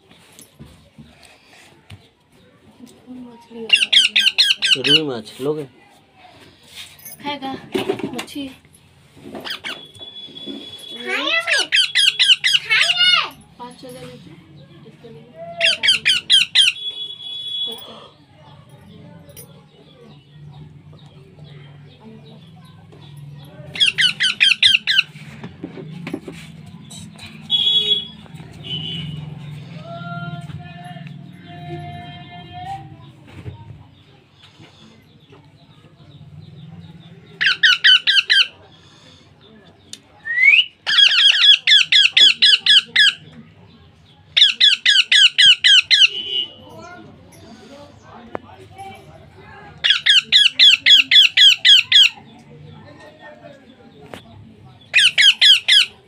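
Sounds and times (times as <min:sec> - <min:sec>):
parrot shrill calls: 0:03.7 - 0:05.0, 0:09.4 - 0:13.3, 0:15.6 - 0:17.6, 0:23.8 - 0:25.1, 0:37.4 - 0:38.5, 0:40.3 - 0:43.2, 0:44.4 - 0:46.4, 0:49.8 - 0:52.2, 0:54.9 - 0:56.0.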